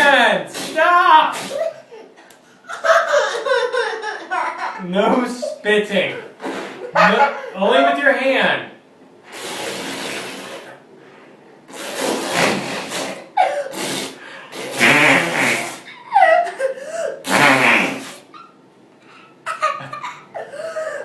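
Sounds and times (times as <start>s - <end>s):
child blowing raspberries: 0.5s - 1.9s, 9.3s - 10.8s, 11.7s - 16.0s, 17.0s - 18.5s
child giggling: 1.4s - 8.0s, 13.3s - 13.8s, 15.8s - 17.3s, 19.4s - 21.0s.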